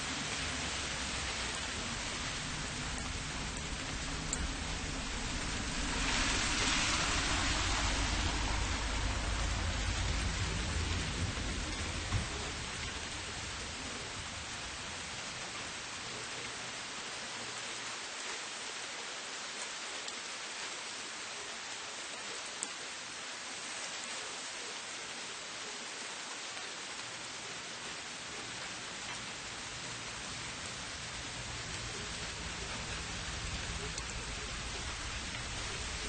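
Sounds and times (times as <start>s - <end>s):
vehicle passing on wet road: 0.0s - 16.7s, 28.4s - 36.0s
steady rain on street: 0.0s - 36.0s.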